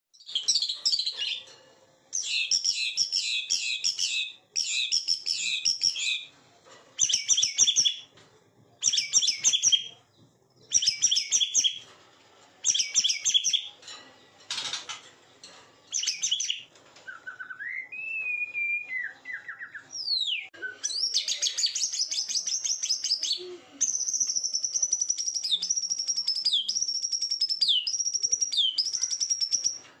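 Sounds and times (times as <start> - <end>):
songbird singing: 15.9 - 29.8.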